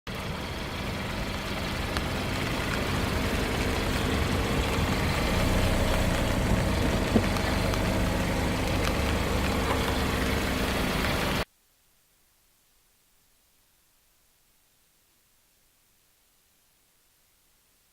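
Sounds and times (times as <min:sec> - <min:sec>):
car engine running at low revs: 0:00.1 - 0:11.4.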